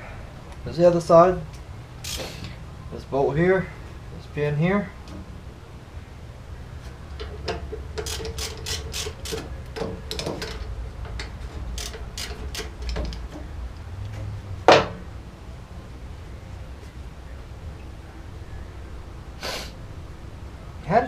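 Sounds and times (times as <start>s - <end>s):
ratchet wrench clicking: 2.0s - 2.5s, 7.2s - 9.5s, 10.1s - 13.3s.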